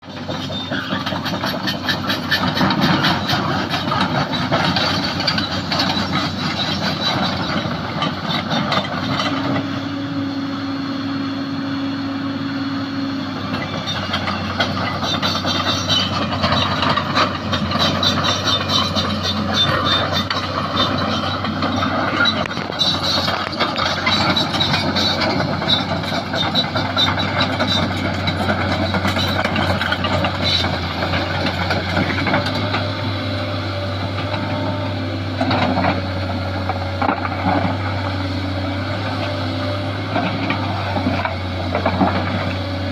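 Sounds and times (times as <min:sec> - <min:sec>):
excavator diesel engine under load: 0:00.0 - 0:42.9.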